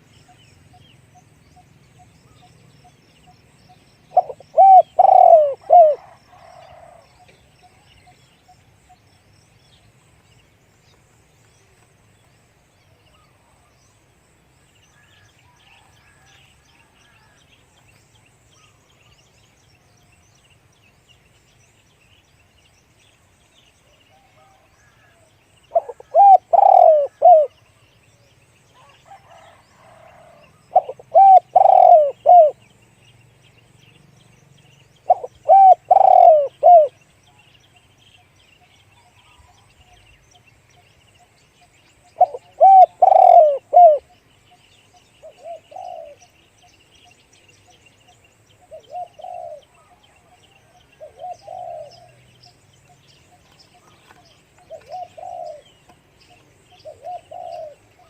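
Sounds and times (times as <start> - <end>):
dove cooing: 4.1 - 7.9, 24.1 - 27.6, 28.8 - 32.6, 35.0 - 37.0, 42.1 - 44.2, 45.2 - 46.3, 48.6 - 52.3, 53.3 - 55.8, 56.4 - 58.0.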